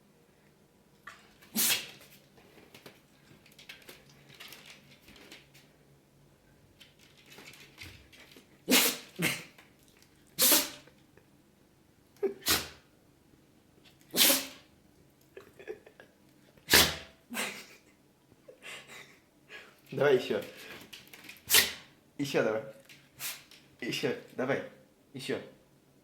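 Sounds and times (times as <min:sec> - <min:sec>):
dog sneezing: 0:01.4 - 0:02.0, 0:08.6 - 0:09.6, 0:10.4 - 0:10.9, 0:12.3 - 0:12.8, 0:14.1 - 0:14.7, 0:16.6 - 0:17.1, 0:21.5 - 0:21.9, 0:23.2 - 0:23.5.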